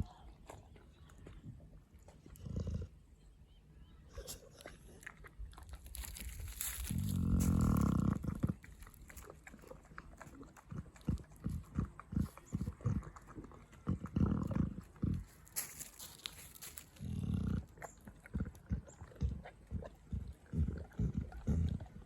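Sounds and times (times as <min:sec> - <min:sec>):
dog chewing and chomping: 0:04.4 - 0:22.0.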